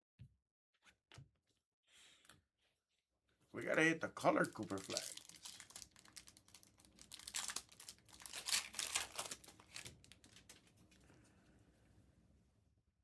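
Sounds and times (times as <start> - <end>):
plastic packaging crinkling: 4.2 - 11.0.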